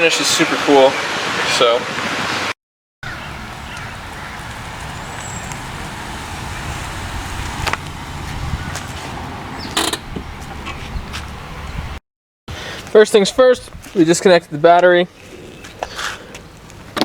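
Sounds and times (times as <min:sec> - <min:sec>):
vehicle motor rumbling: 0:03.0 - 0:12.0.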